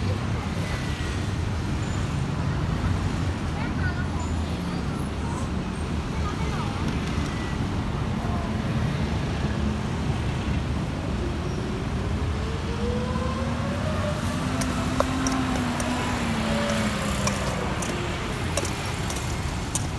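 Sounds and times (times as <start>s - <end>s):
motor vehicle engine rumbling: 13.7s - 19.9s.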